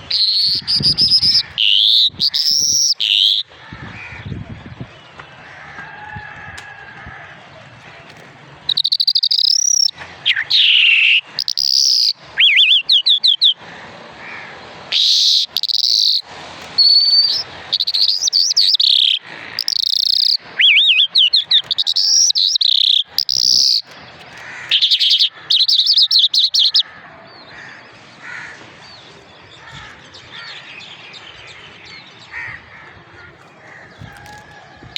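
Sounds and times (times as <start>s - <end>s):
lark singing: 0.0s - 3.5s, 8.7s - 13.6s, 14.9s - 26.8s
soft bird chirping: 8.7s - 13.6s, 14.9s - 16.2s, 16.8s - 26.8s.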